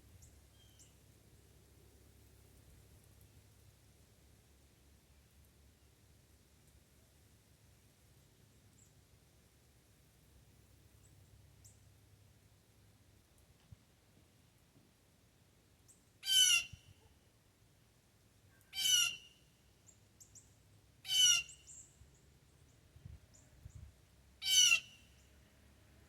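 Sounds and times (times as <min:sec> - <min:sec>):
blue jay harsh jeer calls: 0:16.2 - 0:16.9, 0:18.7 - 0:19.4, 0:21.0 - 0:21.8, 0:24.4 - 0:25.1.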